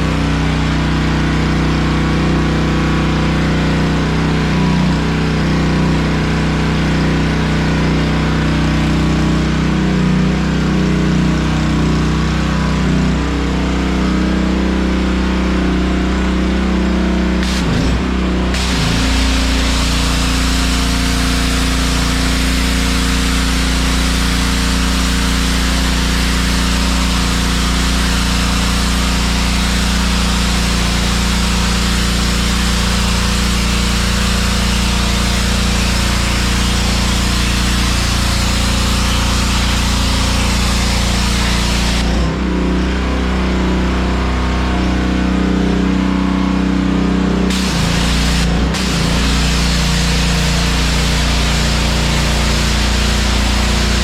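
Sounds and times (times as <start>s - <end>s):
pressure washer engine running: 0.0s - 54.0s
water jet hissing: 17.4s - 42.4s, 47.5s - 54.0s.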